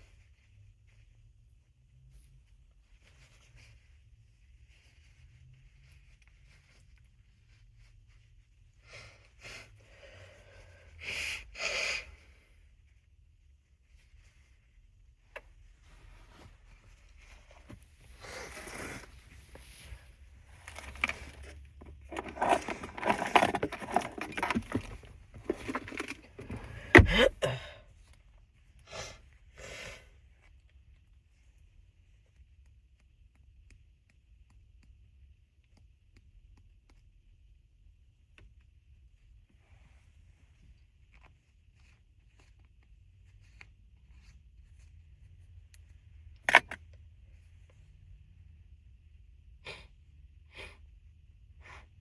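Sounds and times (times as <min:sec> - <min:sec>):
person sniffing: 0:08.8 - 0:12.4, 0:49.6 - 0:50.9, 0:51.6 - 0:52.0
faint rustling and clicks: 0:12.7 - 0:26.8
stifled sneeze: 0:26.8 - 0:27.8.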